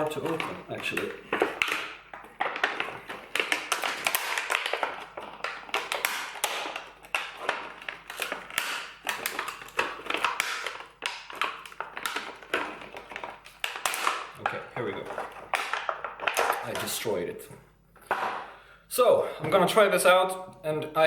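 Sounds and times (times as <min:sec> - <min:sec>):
packaging being torn open: 0:00.0 - 0:16.8.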